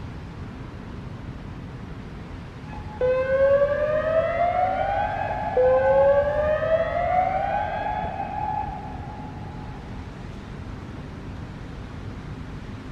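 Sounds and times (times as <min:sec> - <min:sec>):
warning siren whoop tone: 0:02.7 - 0:10.1.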